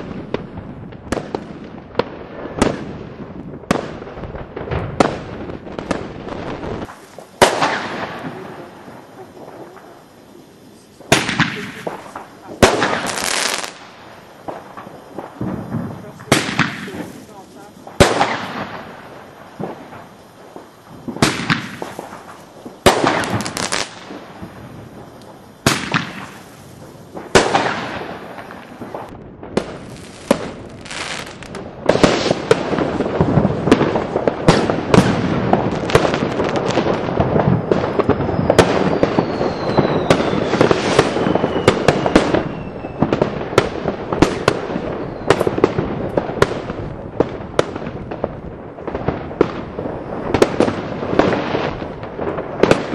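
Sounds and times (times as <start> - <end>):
fireworks bangs and crackle: 0.0 - 52.9
falling firework whistle: 34.5 - 45.8.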